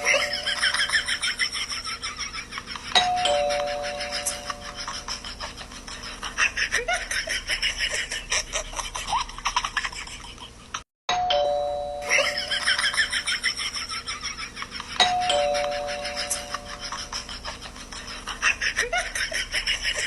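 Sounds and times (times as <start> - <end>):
two-tone doorbell chime: 3.0 - 4.9, 11.1 - 13.2, 15.0 - 17.0.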